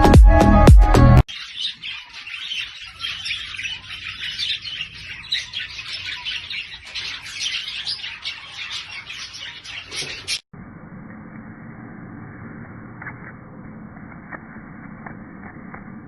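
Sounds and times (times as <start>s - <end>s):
small birds chirping: 1.3s - 10.5s.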